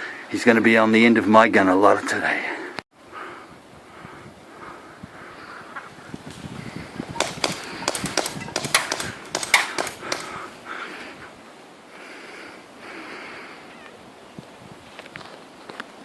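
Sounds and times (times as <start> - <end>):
airsoft guns firing: 7.1 - 10.5.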